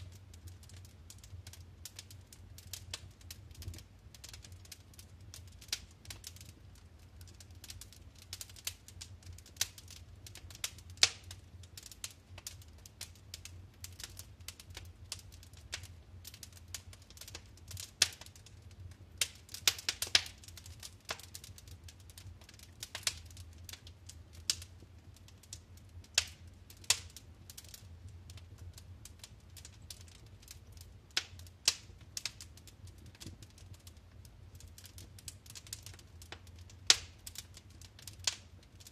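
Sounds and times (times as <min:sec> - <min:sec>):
low rumble of flames: 0:00.0 - 0:38.9
wood fire crackling and popping: 0:00.0 - 0:38.9.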